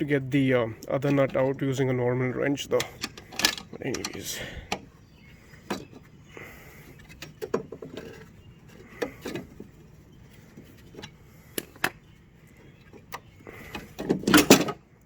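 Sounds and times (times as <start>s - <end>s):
clicks and knocks of handling tools: 2.7s - 4.9s, 5.6s - 6.1s, 6.9s - 9.8s, 10.5s - 14.8s.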